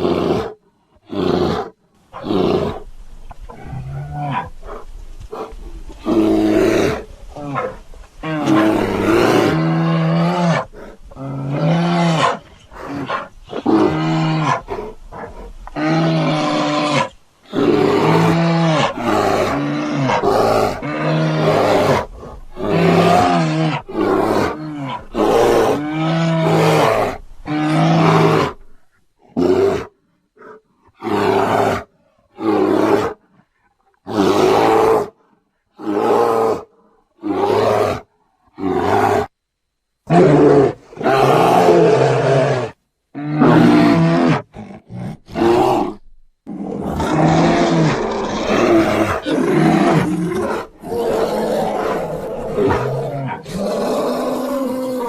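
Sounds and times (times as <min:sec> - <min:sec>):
cartoon bear roaring and growling: 0:00.0 - 0:02.8, 0:06.0 - 0:28.6, 0:34.0 - 0:35.2, 0:40.0 - 0:55.0.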